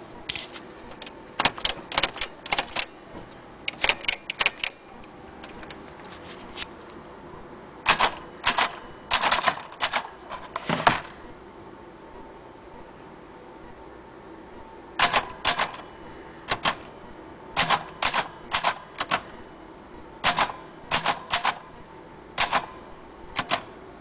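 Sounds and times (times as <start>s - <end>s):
typewriter keys clacking: 0.9s - 2.9s, 3.7s - 4.8s, 7.9s - 10.1s, 15.0s - 15.8s, 16.5s - 16.8s, 17.6s - 19.3s, 20.2s - 21.6s, 22.4s - 22.7s, 23.4s - 23.7s.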